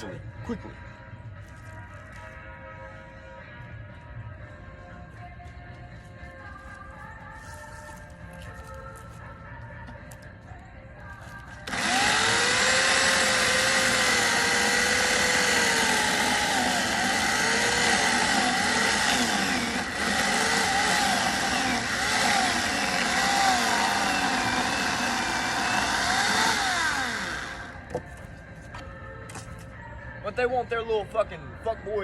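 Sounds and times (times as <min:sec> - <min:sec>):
electric chainsaw running: 0:11.6 - 0:27.9.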